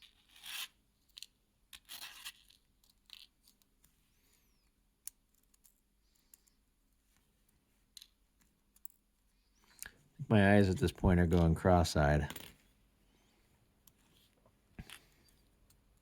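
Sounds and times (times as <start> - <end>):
metal watch parts scratching and clicking: 0.0 - 3.7.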